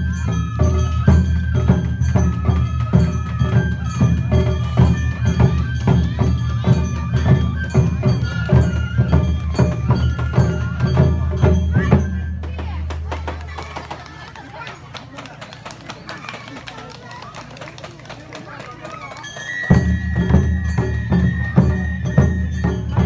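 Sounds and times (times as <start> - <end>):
bamboo flute melody: 0.0 - 13.8, 18.5 - 23.0
taiko drums: 0.0 - 13.8, 19.3 - 23.0.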